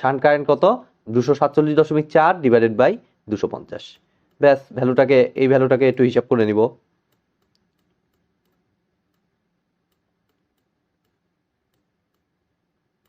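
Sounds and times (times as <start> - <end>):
faint clicks: 7.1 - 9.3, 9.9 - 12.3.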